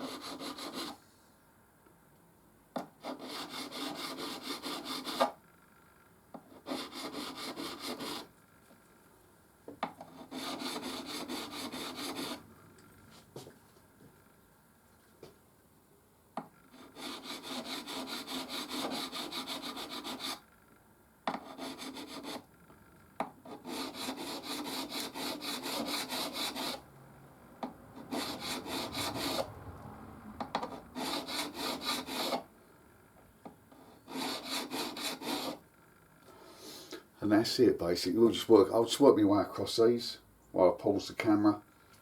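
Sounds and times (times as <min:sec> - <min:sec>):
file scraping over guitar frets: 0:33.8 - 0:35.6.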